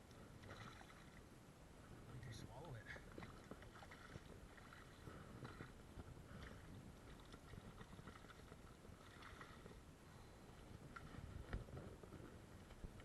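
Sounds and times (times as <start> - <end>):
muffled rustling: 10.6 - 13.0.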